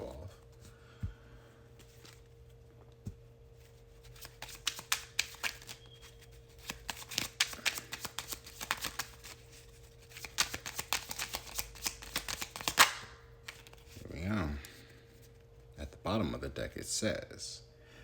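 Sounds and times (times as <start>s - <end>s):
cards being shuffled: 1.8s - 2.3s, 3.0s - 14.0s.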